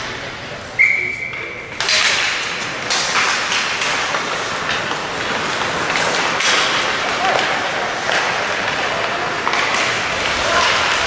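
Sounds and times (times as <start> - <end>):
crowd chatter: 0.0 - 11.0
high whistle blast: 0.8 - 1.5.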